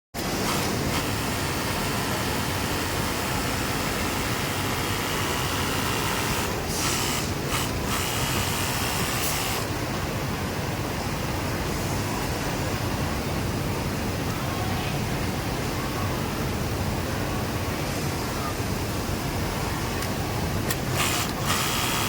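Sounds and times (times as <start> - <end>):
industrial sewing machines running: 0.2 - 9.8, 20.8 - 22.0.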